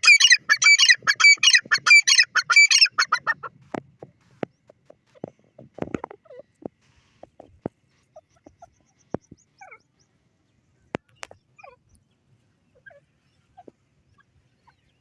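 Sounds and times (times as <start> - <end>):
francolin calling: 0.0 - 3.4.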